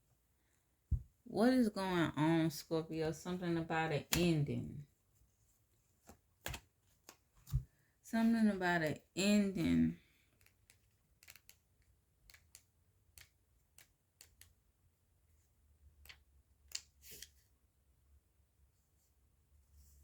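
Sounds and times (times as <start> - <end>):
faint clicks and taps: 10.2 - 14.6.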